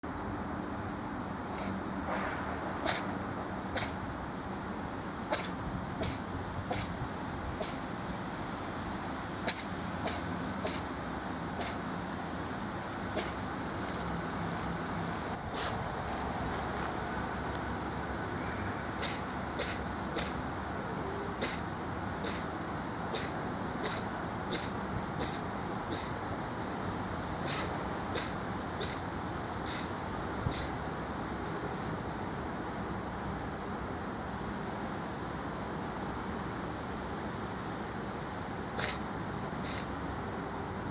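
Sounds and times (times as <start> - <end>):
street traffic noise: 0.0 - 40.9
cat sneezing: 1.5 - 1.8, 2.8 - 4.0, 5.3 - 7.0, 7.6 - 7.8, 9.5 - 10.9, 11.5 - 11.9, 13.2 - 13.5, 15.5 - 16.0, 18.9 - 22.5, 23.1 - 26.2, 27.4 - 30.8, 38.8 - 39.9.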